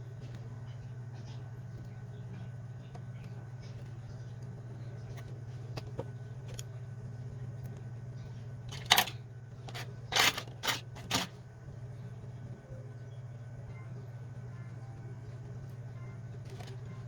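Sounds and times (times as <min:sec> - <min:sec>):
plastic parts clicking and scraping: 0:08.7 - 0:11.4, 0:16.4 - 0:16.8.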